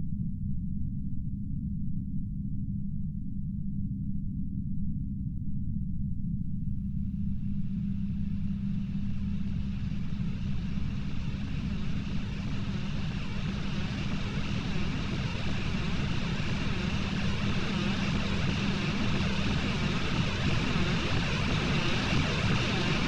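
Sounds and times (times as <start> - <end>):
low-frequency rumble with hum: 0.0 - 23.0
static-like hiss: 7.0 - 23.0.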